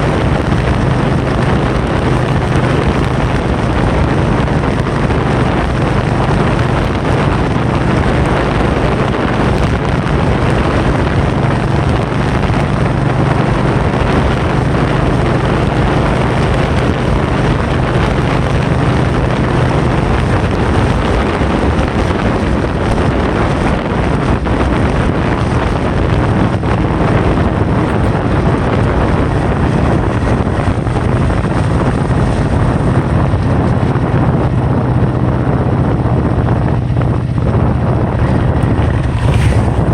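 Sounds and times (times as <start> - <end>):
loud wind noise: 0.0 - 39.9
low drone: 34.7 - 39.9.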